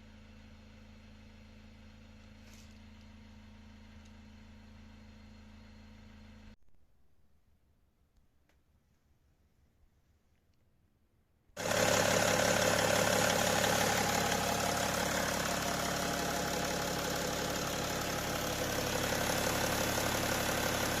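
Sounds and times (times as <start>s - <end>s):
car engine idling: 0.0s - 6.6s, 11.6s - 21.0s.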